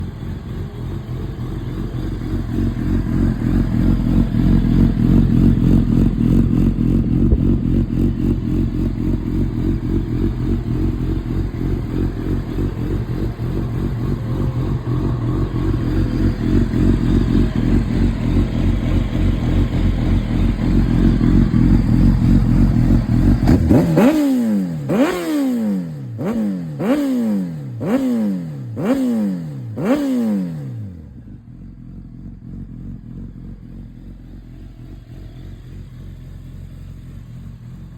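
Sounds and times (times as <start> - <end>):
motorcycle idling: 0.0 - 26.2, 28.3 - 37.9
motorcycle throttle blips: 0.0 - 27.1.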